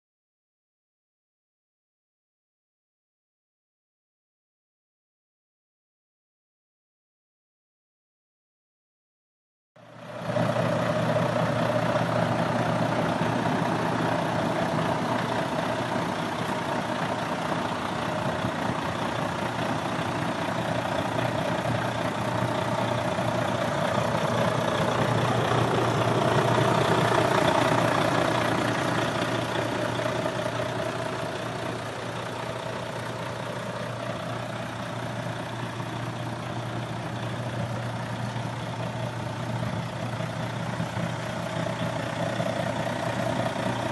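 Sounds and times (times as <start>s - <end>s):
diesel truck idling: 9.8s - 43.9s.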